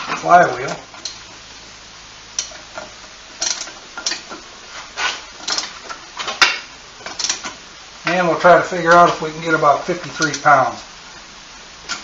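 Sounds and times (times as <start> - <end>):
metal tools clanking on metal: 2.4 - 4.4, 10.1 - 10.5.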